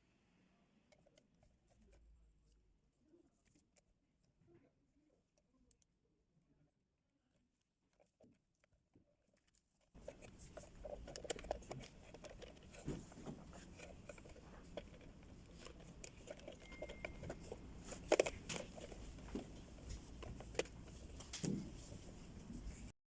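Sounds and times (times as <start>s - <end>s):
plastic and metal parts clicking: 9.4s - 21.9s.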